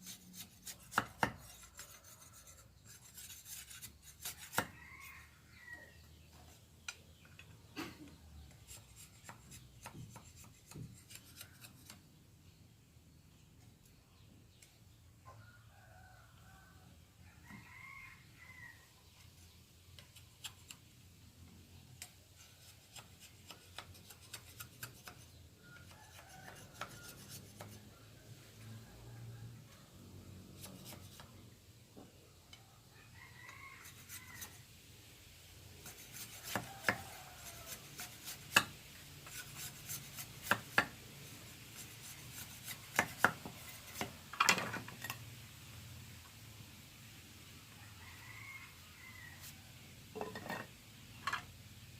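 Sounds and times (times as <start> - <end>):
bamboo scraping and rubbing: 0.0 - 7.7, 8.4 - 12.1, 19.0 - 20.9, 21.7 - 28.0, 30.5 - 31.5, 33.4 - 34.8, 35.6 - 45.2
distant rooster crowing: 4.4 - 6.1, 15.2 - 19.0, 25.6 - 31.3, 32.7 - 34.6, 36.2 - 38.2, 47.7 - 50.7.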